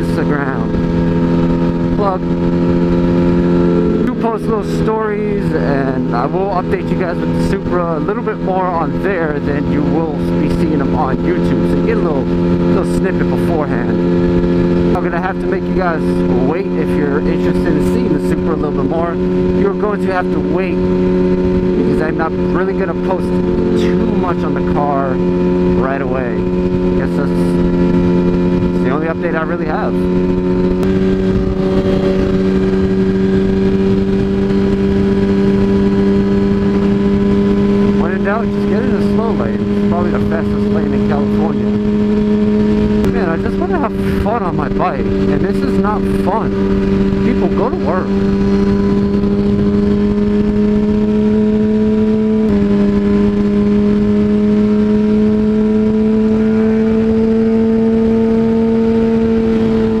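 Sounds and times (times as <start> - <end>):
motorcycle engine running: 0.0 - 60.0
wind noise: 30.0 - 40.5, 41.6 - 53.5.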